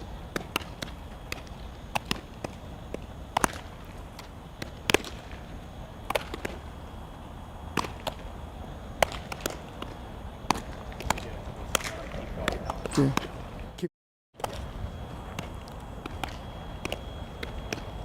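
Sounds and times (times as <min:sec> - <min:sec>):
softballs smacking into gloves: 0:00.3 - 0:05.2, 0:09.0 - 0:13.3.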